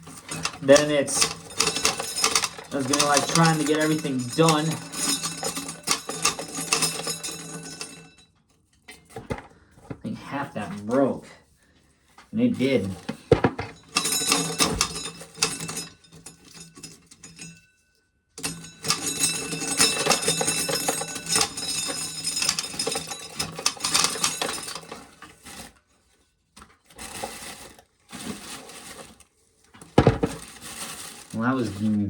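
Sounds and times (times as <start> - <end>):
small hard objects clattering: 0.0 - 7.9, 26.8 - 32.0.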